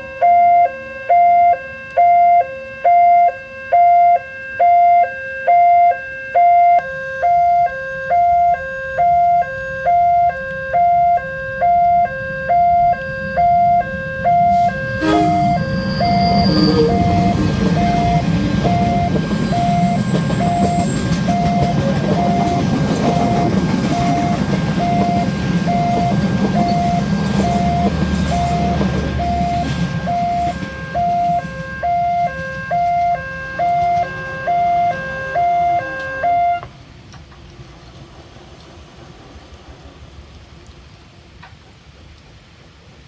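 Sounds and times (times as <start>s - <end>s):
level-crossing warning siren: 0.0s - 36.7s
train rumbling: 9.3s - 41.6s
faint steady hiss: 36.0s - 43.0s.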